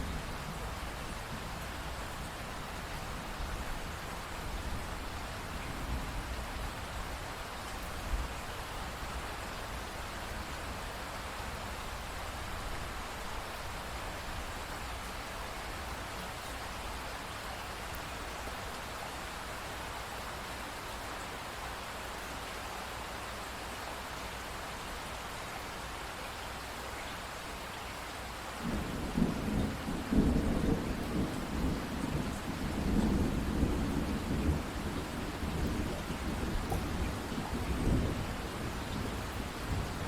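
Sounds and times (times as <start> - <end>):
steady rain hissing: 0.0 - 40.0
rolling thunder: 28.6 - 40.0.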